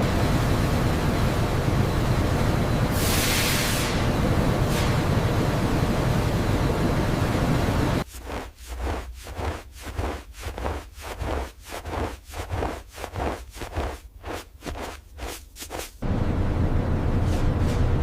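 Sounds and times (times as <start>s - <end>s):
rhythmic scraping: 8.0s - 16.0s.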